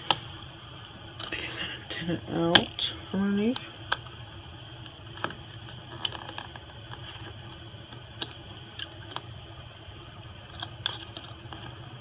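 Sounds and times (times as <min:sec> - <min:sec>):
tools clicking on phone parts: 0:00.0 - 0:00.3
low steady hum: 0:00.0 - 0:12.0.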